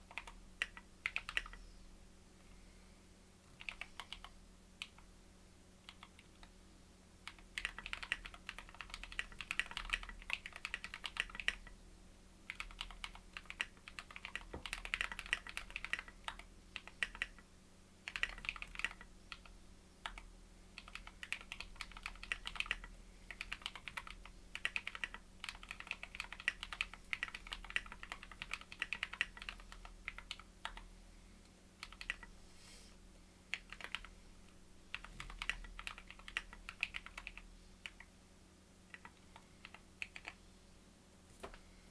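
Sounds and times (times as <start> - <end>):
mechanical keyboard typing: 0.1 - 1.6, 3.5 - 5.1, 7.2 - 11.7, 12.5 - 17.4, 18.1 - 30.8, 31.8 - 32.3, 33.5 - 34.1, 34.9 - 38.1, 38.9 - 40.4.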